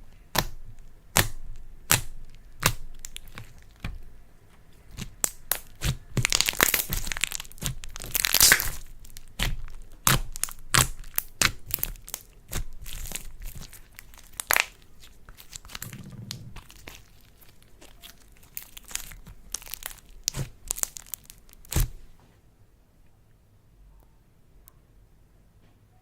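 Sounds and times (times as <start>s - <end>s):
slime crackling: 0.2s - 22.2s
slime popping and clicking: 4.9s - 17.0s.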